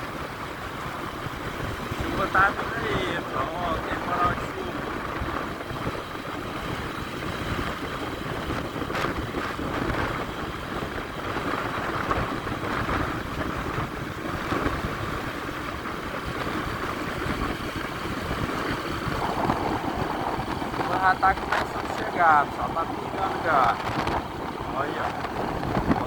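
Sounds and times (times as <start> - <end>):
vehicle engine running: 0.0 - 26.0
wind buffeting microphone: 0.0 - 26.0.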